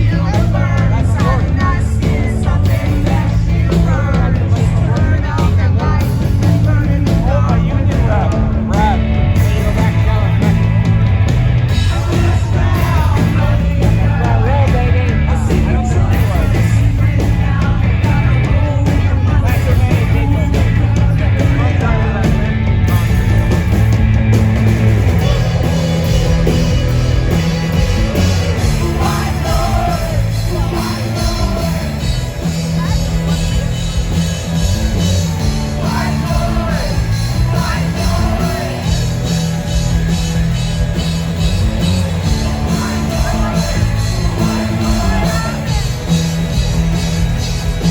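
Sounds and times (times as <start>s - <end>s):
loud rock music: 0.0s - 47.9s
person singing: 11.7s - 23.8s, 25.1s - 39.8s, 42.1s - 47.9s.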